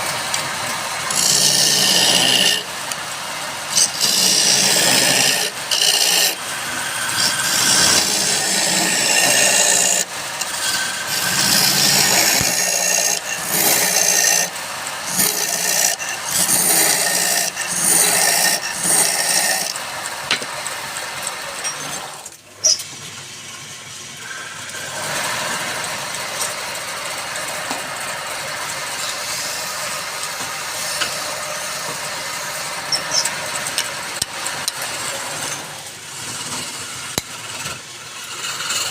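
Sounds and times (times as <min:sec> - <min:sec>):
woodworking machine cutting wood: 0:00.0 - 0:22.9, 0:24.2 - 0:38.9.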